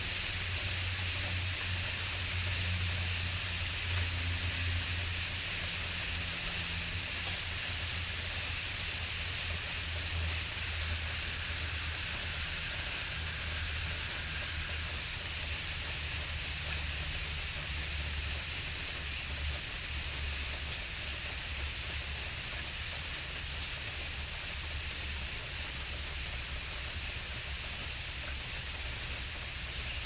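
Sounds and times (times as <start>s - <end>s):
shrill insect drone: 9.2s - 18.2s.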